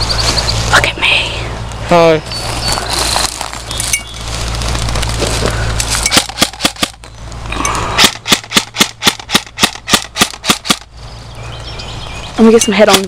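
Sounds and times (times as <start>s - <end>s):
airsoft gun shots: 6.1s - 7.0s, 8.0s - 10.9s.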